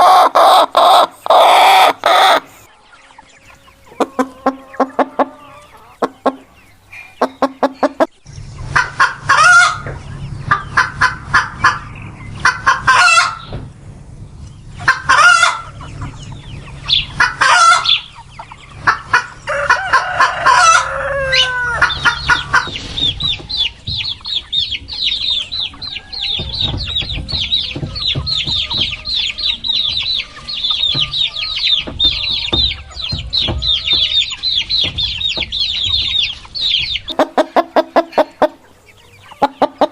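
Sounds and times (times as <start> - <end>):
chicks peeping: 0.0 - 39.9
hens clucking: 0.0 - 39.9
rooster crowing: 19.4 - 22.0, 25.6 - 27.0.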